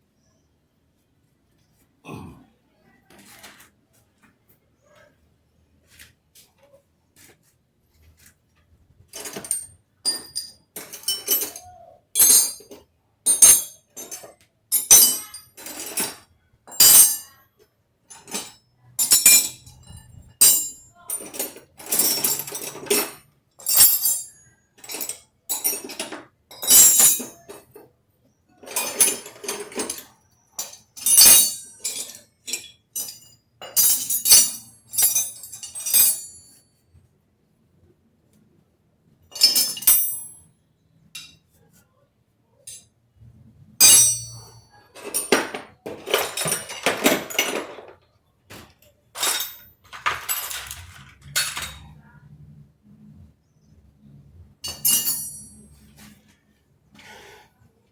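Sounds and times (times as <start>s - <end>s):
metal tools clinking: 9.1s - 17.4s, 18.1s - 27.8s, 28.6s - 36.7s, 39.3s - 40.5s, 41.2s - 41.5s, 42.6s - 42.9s, 43.8s - 52.2s, 54.6s - 56.2s.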